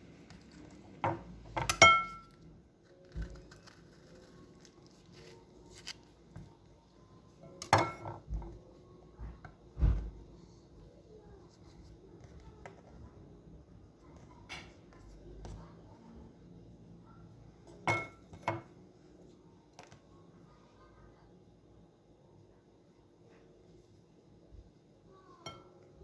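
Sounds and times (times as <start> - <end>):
glass clinking: 1.0 - 2.3, 17.8 - 18.6.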